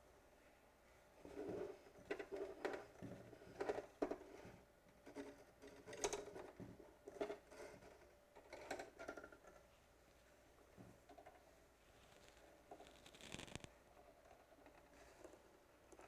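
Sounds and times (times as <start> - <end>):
rustling of handling: 9.4 - 16.0.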